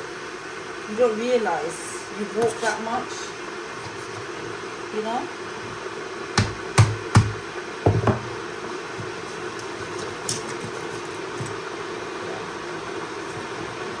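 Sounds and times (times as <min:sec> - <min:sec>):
mechanical hum: 0:00.0 - 0:14.0
sharp knocks: 0:06.4 - 0:08.2.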